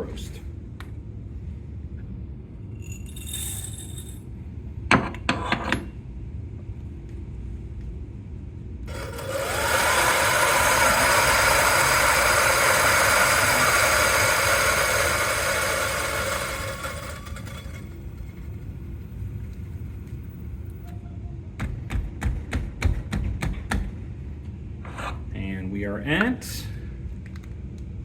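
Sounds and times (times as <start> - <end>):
coffee beans clattering: 2.8 - 4.2, 9.0 - 18.2
coffee grinder grinding: 2.9 - 4.2, 8.9 - 18.4.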